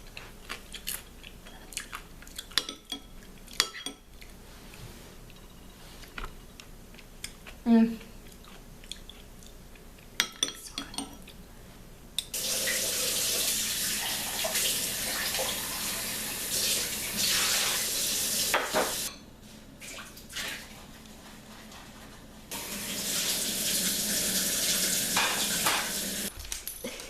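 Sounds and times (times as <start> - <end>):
tap water running into sink: 12.4 - 19.1, 22.5 - 26.3.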